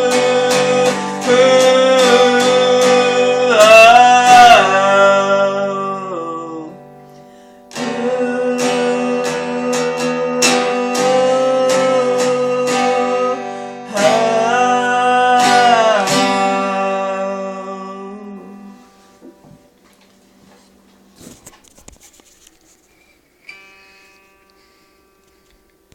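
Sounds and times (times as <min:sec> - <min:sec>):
person singing long notes: 0:00.0 - 0:07.1, 0:07.7 - 0:19.1
strummed acoustic guitar: 0:00.0 - 0:22.8, 0:23.4 - 0:25.5.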